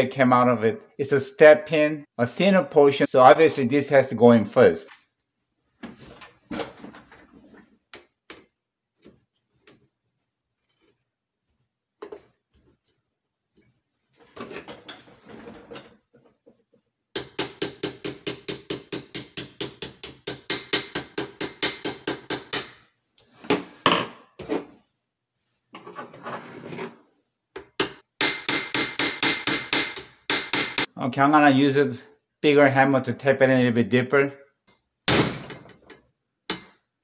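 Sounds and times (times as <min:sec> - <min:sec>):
handling of parts: 0:10.6 - 0:11.1, 0:13.6 - 0:16.8
small hammer tapping metal pin: 0:17.2 - 0:22.8.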